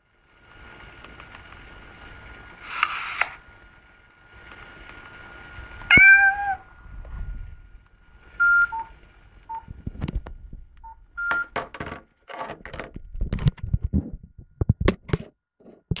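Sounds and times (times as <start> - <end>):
meow-like phone tone: 5.9 - 6.6
keypad beeps: 8.4 - 8.9, 9.5 - 9.7, 10.8 - 11.6.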